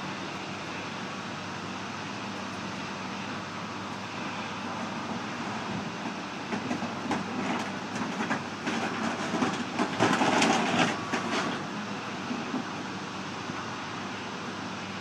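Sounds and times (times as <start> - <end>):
backhoe engine running: 0.0 - 15.0
clattering and crunching: 6.6 - 11.6.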